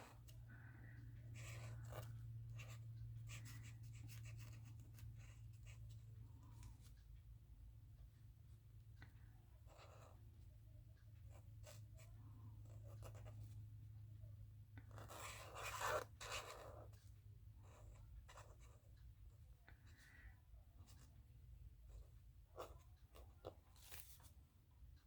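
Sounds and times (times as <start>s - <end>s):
faint low hum: 0.0s - 25.0s
pen scratching on paper: 1.3s - 6.9s, 9.6s - 10.2s, 11.3s - 13.6s, 14.8s - 17.0s, 17.6s - 18.9s, 21.9s - 24.3s.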